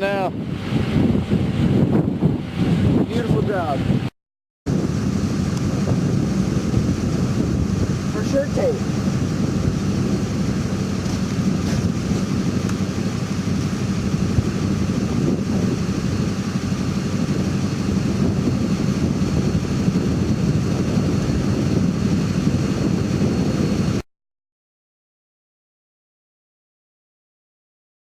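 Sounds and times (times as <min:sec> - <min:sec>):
vehicle engine rumble: 0:00.0 - 0:04.1, 0:04.7 - 0:24.0
road noise: 0:04.7 - 0:21.4.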